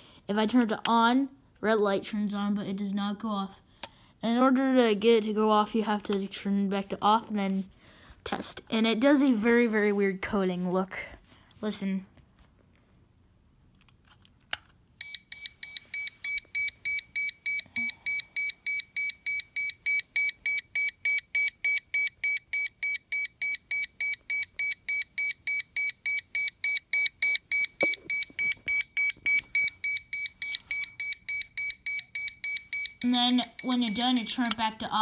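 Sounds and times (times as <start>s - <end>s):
rapid high-pitched smoke alarm beeps: 15.0s - 34.6s
alarm click: 15.0s - 34.7s.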